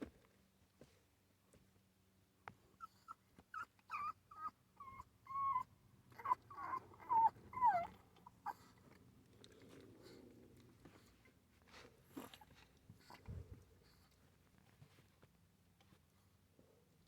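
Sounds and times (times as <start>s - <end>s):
puppy whimpering: 2.8s - 8.8s.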